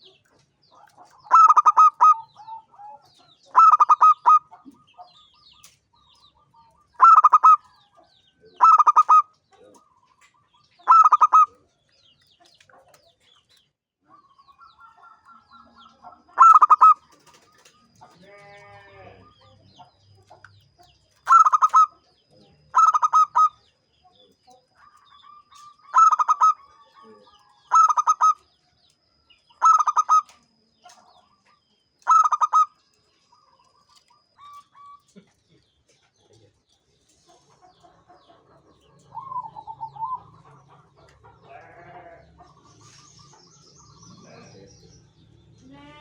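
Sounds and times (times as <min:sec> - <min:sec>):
dove cooing: 0:01.0 - 0:04.8, 0:07.0 - 0:07.7, 0:08.6 - 0:09.9, 0:10.8 - 0:11.6, 0:16.4 - 0:19.6, 0:21.2 - 0:23.6, 0:24.8 - 0:28.4, 0:29.6 - 0:30.4, 0:32.0 - 0:32.8, 0:38.8 - 0:41.4.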